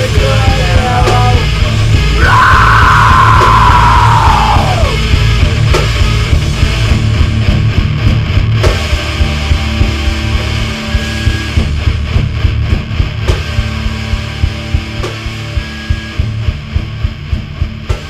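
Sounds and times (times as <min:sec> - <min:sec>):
heavy rock band playing: 0:00.0 - 0:18.0
long high scream: 0:02.2 - 0:05.0.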